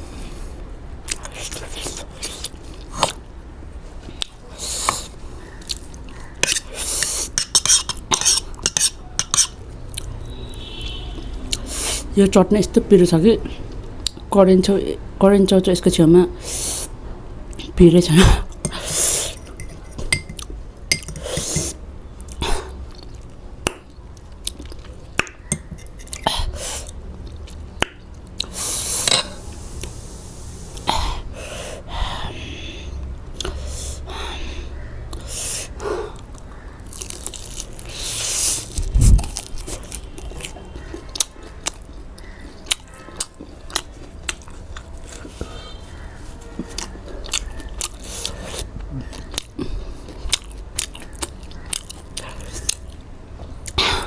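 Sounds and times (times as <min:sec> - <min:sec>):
person chewing and biting food: 0:36.1 - 0:45.5, 0:46.5 - 0:53.8
wet mouth clicks and crunches: 0:49.0 - 0:53.0.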